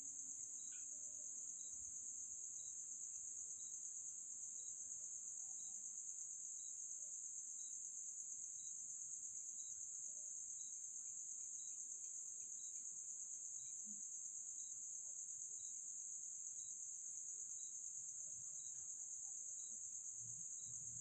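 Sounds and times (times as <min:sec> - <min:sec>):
crickets trilling: 0:00.0 - 0:21.0.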